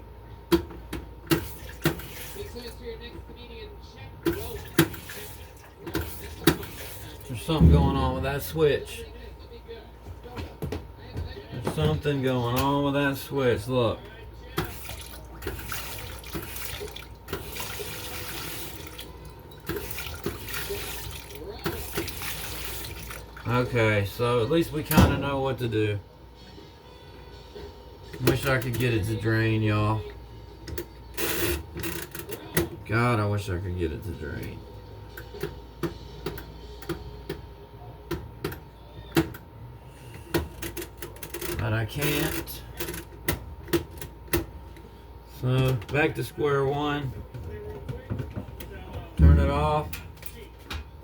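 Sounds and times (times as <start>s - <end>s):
low steady hum: 0.0s - 51.0s
water running into washing machine: 1.2s - 2.7s, 4.3s - 8.4s, 14.5s - 25.4s.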